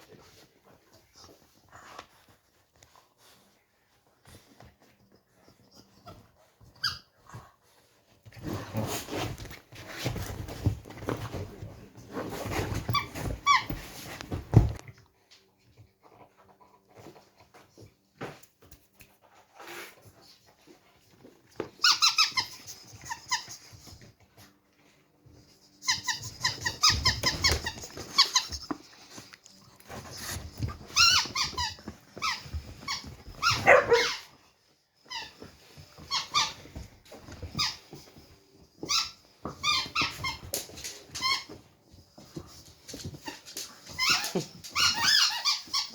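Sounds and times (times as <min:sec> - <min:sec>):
dog scuffling and chewing: 0:00.0 - 0:45.9
squeaky toy squeaks: 0:06.7 - 0:07.1, 0:21.8 - 0:23.7, 0:25.8 - 0:28.7, 0:30.8 - 0:34.3, 0:38.9 - 0:40.4, 0:43.9 - 0:45.9.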